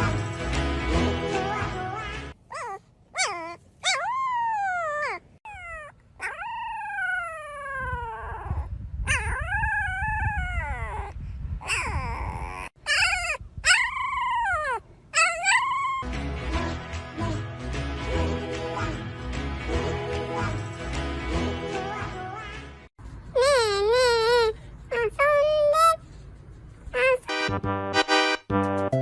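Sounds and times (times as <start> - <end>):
dog howling and whining: 2.5 - 16.1.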